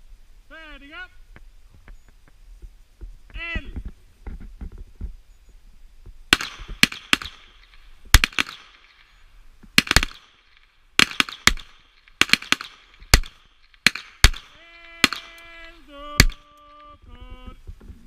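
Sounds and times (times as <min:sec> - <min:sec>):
pistol shots with echo: 0:06.3 - 0:09.1, 0:09.8 - 0:16.8.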